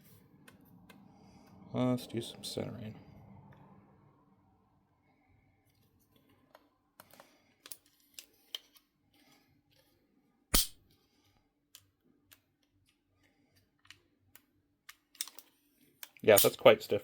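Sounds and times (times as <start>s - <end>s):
sharp loud click: 10.6s - 10.8s.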